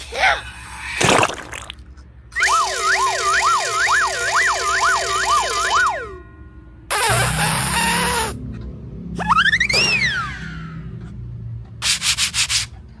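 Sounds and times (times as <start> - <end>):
warbling siren-like tone: 2.3 - 8.4.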